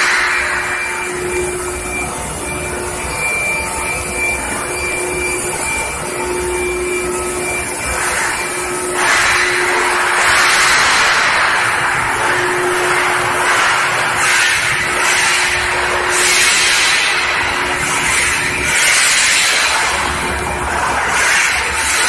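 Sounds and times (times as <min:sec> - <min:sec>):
loud rushing noise: 0:00.0 - 0:02.8, 0:07.8 - 0:22.0
furnace humming with whine: 0:00.0 - 0:22.0.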